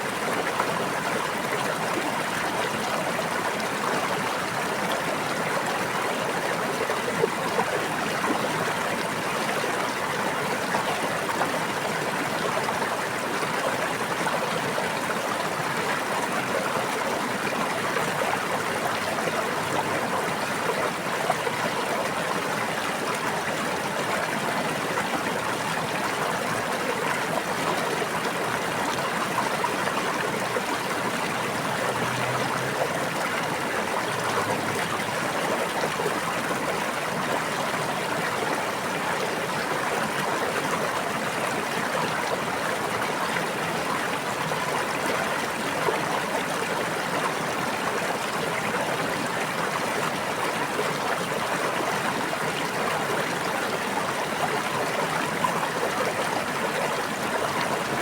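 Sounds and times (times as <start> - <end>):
brook babbling: 0.0 - 58.0.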